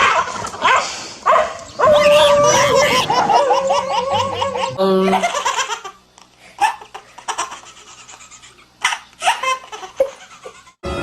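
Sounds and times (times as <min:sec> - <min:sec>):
person laughing: 0:02.0 - 0:05.5.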